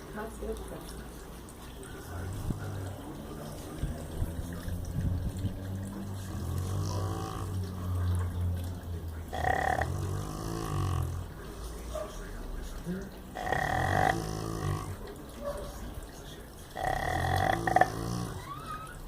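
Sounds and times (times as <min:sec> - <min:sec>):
dog snoring: 0:06.2 - 0:08.1, 0:09.3 - 0:11.3, 0:13.4 - 0:15.0, 0:16.8 - 0:18.5.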